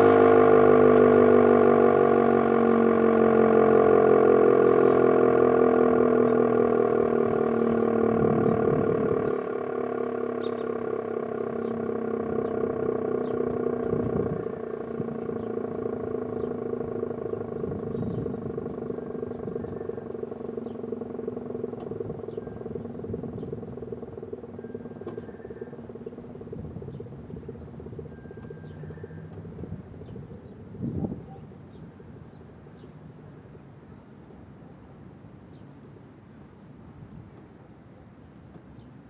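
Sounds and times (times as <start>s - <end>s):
rotating warning siren: 0.0s - 30.4s.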